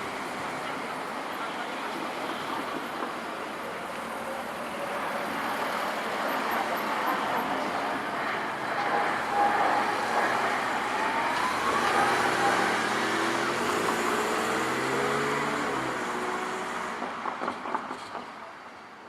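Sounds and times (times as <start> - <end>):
vehicle passing with whine: 8.8 - 17.0.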